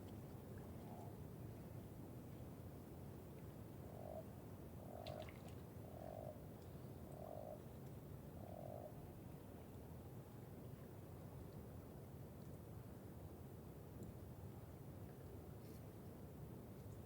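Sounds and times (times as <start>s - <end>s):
frog croaking: 3.9s - 4.2s.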